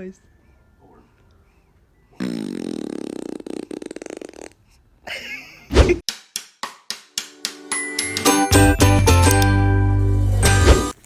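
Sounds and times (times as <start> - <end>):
baby farting: 2.2 - 4.6.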